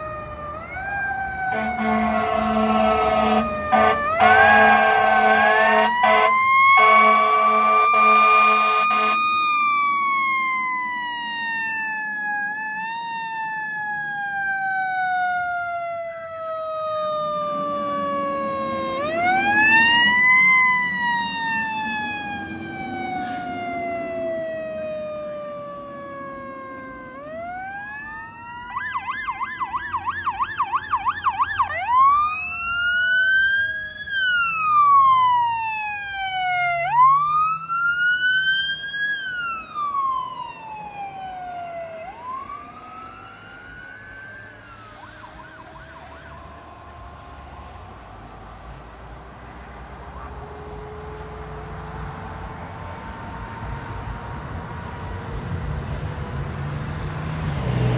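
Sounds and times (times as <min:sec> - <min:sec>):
electronic siren wailing: 0:00.0 - 0:48.3
siren fast yelp: 0:00.6 - 0:46.9.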